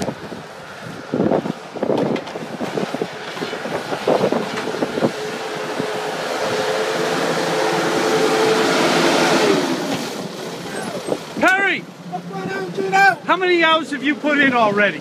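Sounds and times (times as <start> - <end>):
heavy truck engine drone: 0.0 - 15.0
knocks and clatter: 1.9 - 2.8.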